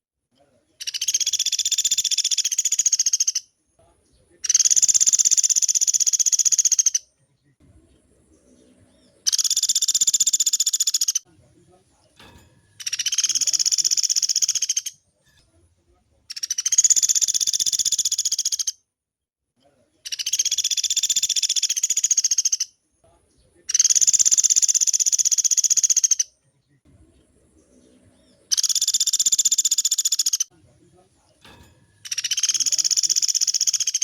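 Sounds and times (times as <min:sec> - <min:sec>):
woodpecker rattling trills: 0:00.8 - 0:03.5, 0:04.4 - 0:07.1, 0:08.0 - 0:11.2, 0:12.6 - 0:15.0, 0:16.3 - 0:18.8, 0:20.1 - 0:22.7, 0:23.7 - 0:26.3, 0:27.2 - 0:30.5, 0:31.4 - 0:34.0.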